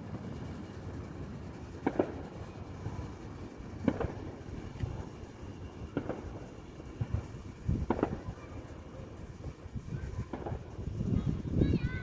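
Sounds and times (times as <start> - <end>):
fireworks bangs: 0.0 - 12.0
wind on microphone: 3.8 - 12.0.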